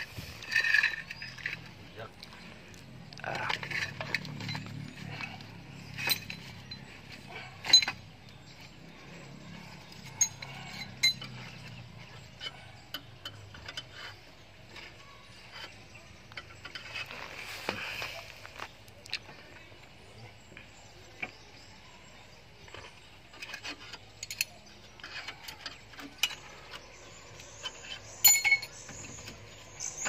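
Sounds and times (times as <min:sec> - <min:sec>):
sharp metal clinks: 0:03.8 - 0:06.9, 0:09.3 - 0:11.7, 0:27.6 - 0:29.0.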